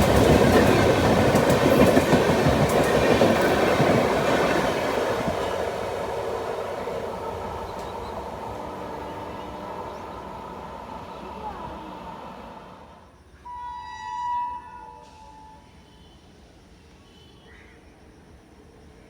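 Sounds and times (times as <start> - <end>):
train wheel clicks: 0.0 - 12.0
train rumbling past: 0.0 - 16.9.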